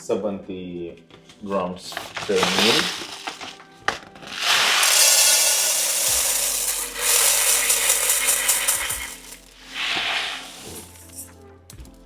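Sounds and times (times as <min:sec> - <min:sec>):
uncooked rice rustling: 0:01.8 - 0:11.3.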